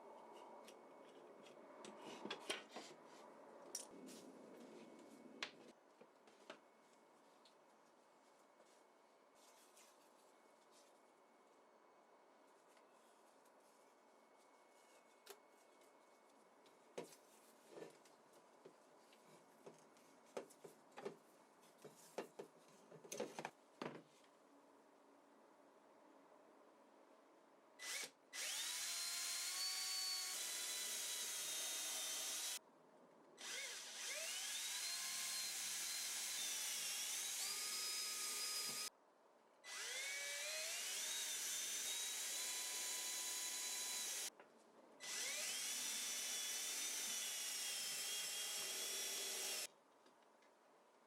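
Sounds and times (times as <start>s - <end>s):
electric drill whining: 27.8s - 32.6s, 33.4s - 38.9s, 39.7s - 44.3s, 45.0s - 49.7s.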